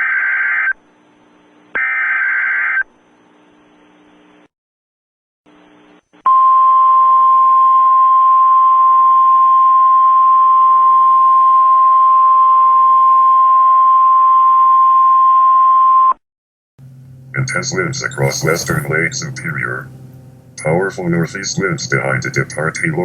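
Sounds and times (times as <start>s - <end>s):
steady high alert tone: 17.3s - 23.0s.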